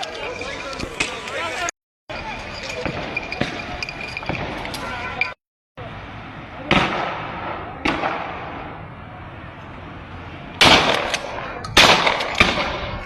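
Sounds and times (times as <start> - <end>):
pellet gun shots with echo: 6.7 - 8.6, 10.6 - 13.0.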